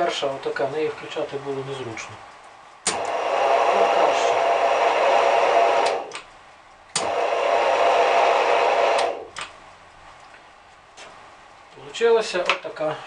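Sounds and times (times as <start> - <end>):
drill press motor running: 2.8 - 6.2, 6.9 - 9.3.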